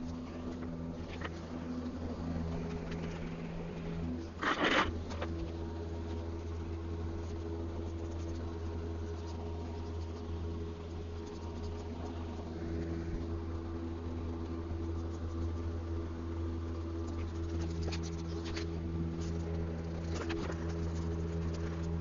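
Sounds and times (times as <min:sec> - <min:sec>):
steady tones: 0:00.0 - 0:15.0
low machine hum: 0:00.0 - 0:22.0.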